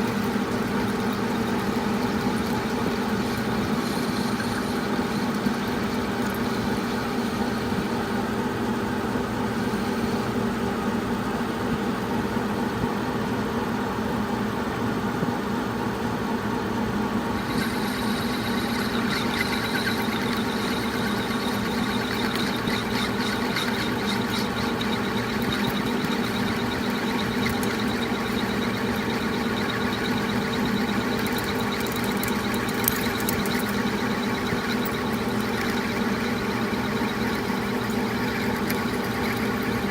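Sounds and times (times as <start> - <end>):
metal lathe humming: 0.0 - 7.9, 17.2 - 39.9.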